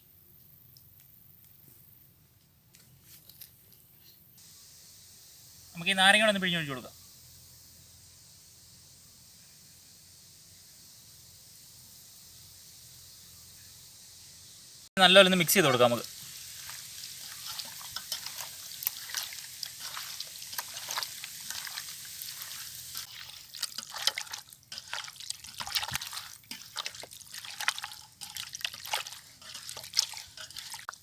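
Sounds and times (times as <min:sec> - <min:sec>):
wet squelching and smacking: 0:16.0 - 0:31.0.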